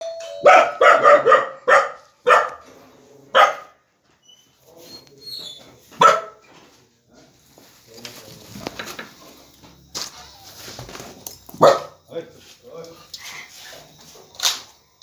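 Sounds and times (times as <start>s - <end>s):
puppy barking: 0.4s - 2.7s, 3.3s - 3.8s, 6.0s - 6.4s, 11.6s - 12.0s.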